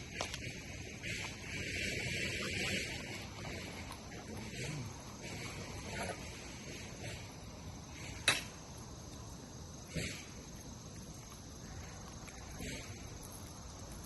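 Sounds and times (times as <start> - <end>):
high-pitched insect chirring: 0.0 - 14.0
sharp crack: 8.0 - 8.6.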